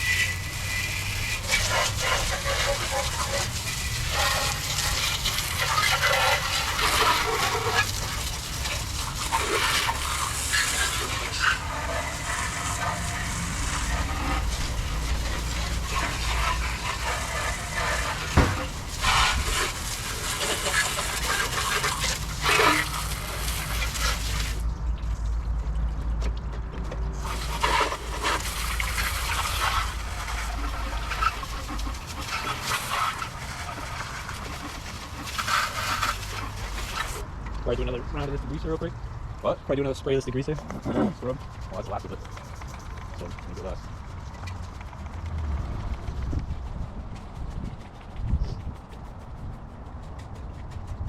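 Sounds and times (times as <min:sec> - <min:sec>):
water spraying and splashing: 0:00.0 - 0:24.7, 0:27.2 - 0:37.2.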